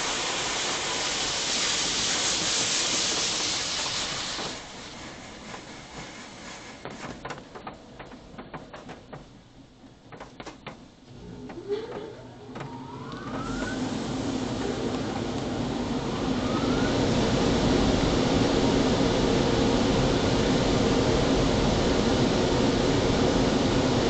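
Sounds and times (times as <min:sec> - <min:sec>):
dryer blowers whining: 0:00.0 - 0:24.0.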